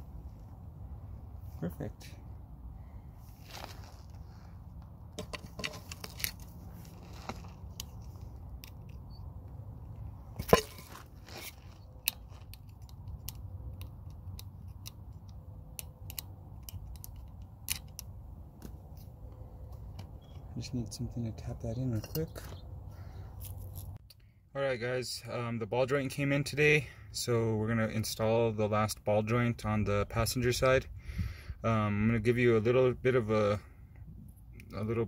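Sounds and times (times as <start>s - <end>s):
steady low rumble: 0.0s - 24.0s.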